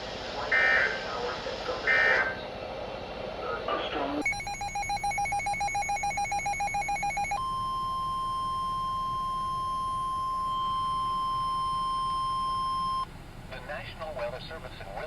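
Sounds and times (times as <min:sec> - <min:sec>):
steady high alarm tone: 0:04.2 - 0:13.0.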